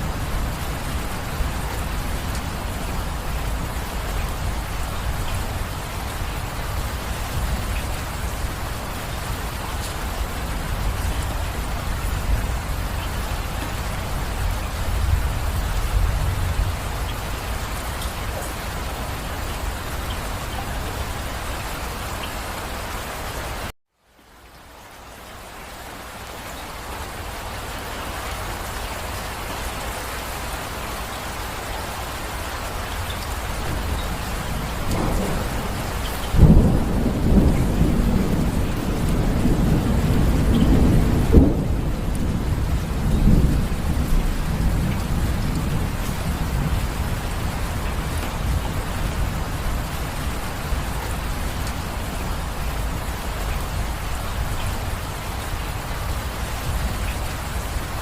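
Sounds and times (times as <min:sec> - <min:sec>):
low rumble of thunder: 0:00.0 - 0:22.2, 0:33.0 - 0:58.0
steady rain: 0:00.0 - 0:58.0
loud thunderclap: 0:33.6 - 0:51.7.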